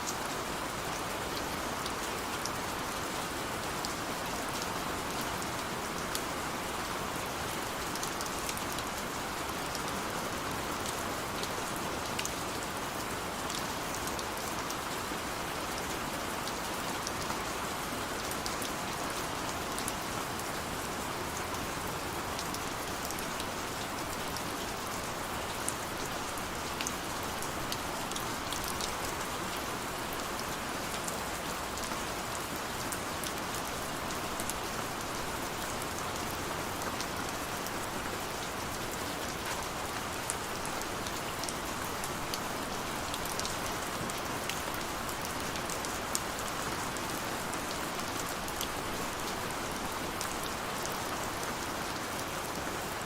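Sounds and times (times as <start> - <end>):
steady rain hiss: 0.0 - 53.0.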